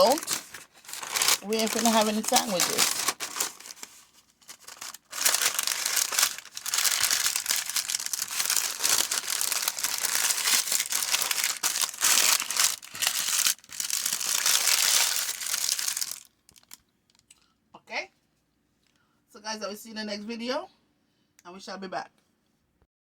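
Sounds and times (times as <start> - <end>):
wrapping crinkling: 0.0 - 17.2.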